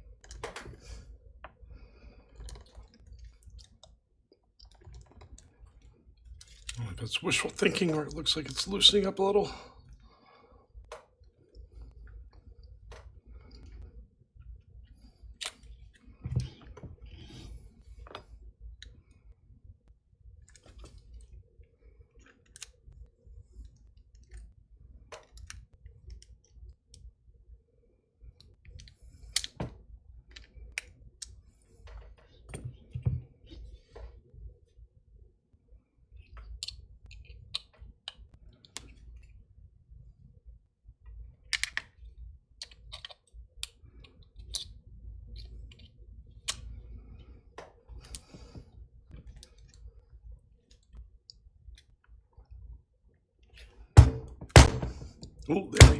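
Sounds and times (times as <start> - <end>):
dull knocks: 54.0 - 55.1.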